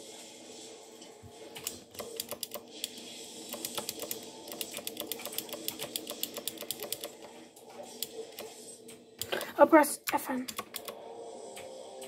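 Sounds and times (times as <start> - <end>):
keyboard keys clicking: 1.6 - 2.7, 3.5 - 7.3, 10.1 - 11.0.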